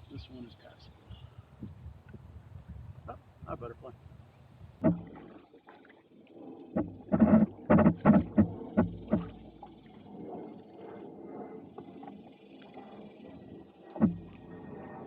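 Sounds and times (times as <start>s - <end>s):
loud hollow knocks: 4.8s - 5.2s, 6.8s - 9.5s, 14.0s - 14.4s
kayak and paddle knocking: 4.8s - 5.4s, 6.7s - 9.9s, 14.0s - 14.8s.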